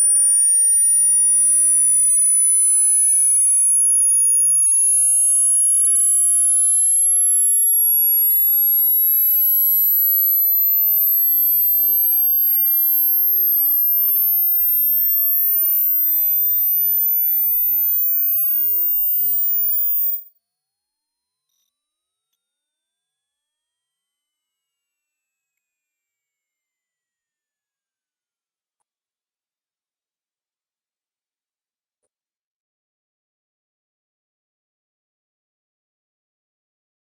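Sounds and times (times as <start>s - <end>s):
high-pitched sine tone sweeping up: 0.0s - 20.3s.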